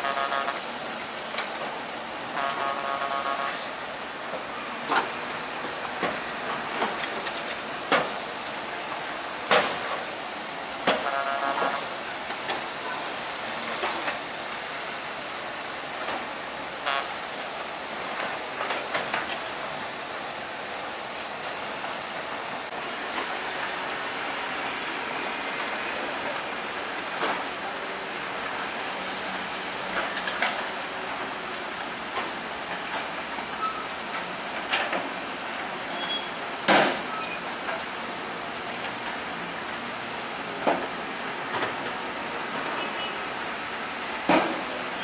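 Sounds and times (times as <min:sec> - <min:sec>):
crawler tracks squealing: 0:00.0 - 0:45.0
steady mechanical noise: 0:00.0 - 0:45.0.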